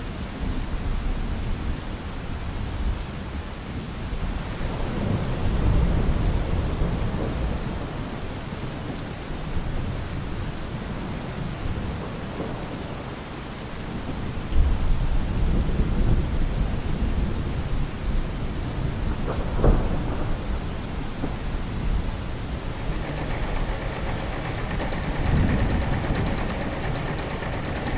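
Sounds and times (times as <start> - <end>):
steady rain: 0.0 - 27.9
rolling thunder: 19.3 - 22.1.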